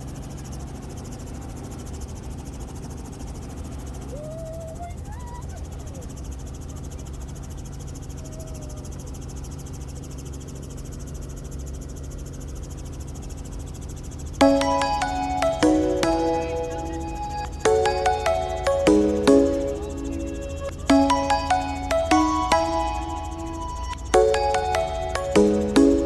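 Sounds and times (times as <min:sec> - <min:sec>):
faint high chirring: 0:14.4 - 0:26.0.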